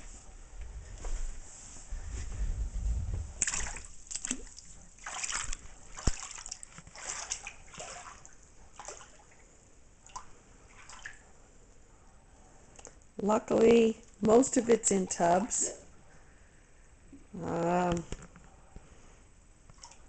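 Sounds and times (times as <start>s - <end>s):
water splashing and sloshing: 3.3s - 11.3s, 19.7s - 20.0s.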